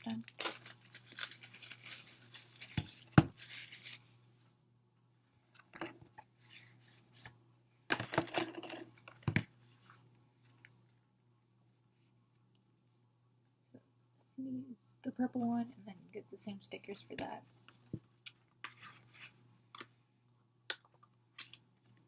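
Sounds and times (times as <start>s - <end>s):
plastic wrapping tearing and crinkling: 0.0s - 4.1s.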